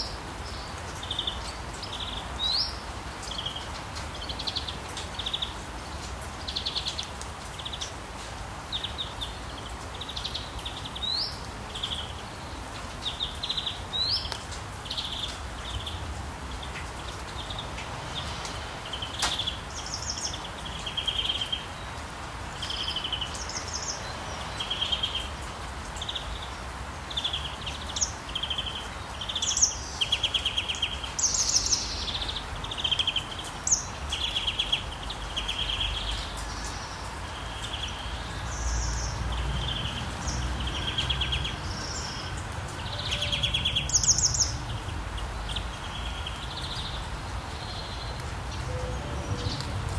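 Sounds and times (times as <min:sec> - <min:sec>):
birds trilling: 0:35.5 - 0:49.9.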